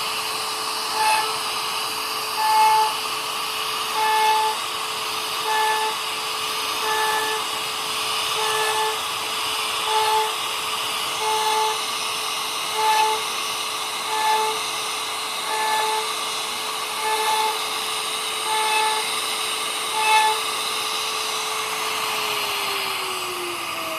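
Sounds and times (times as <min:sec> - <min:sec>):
power carving tool running: 0:00.0 - 0:23.9.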